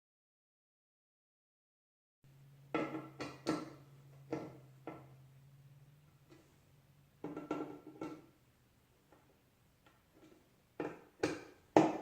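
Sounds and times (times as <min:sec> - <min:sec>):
screwdriver and parts knocking: 0:02.7 - 0:05.2, 0:07.2 - 0:08.3, 0:09.1 - 0:12.0.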